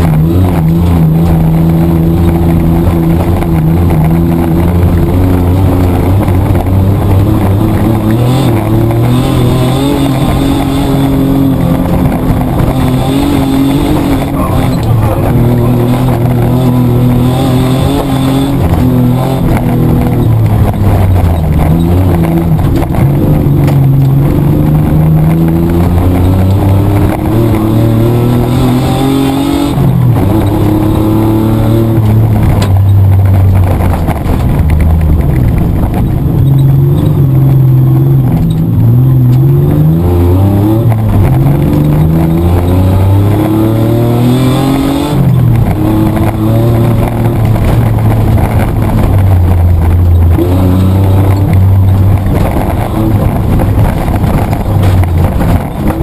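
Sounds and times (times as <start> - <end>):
car engine accelerating from inside: 0.0 - 56.0.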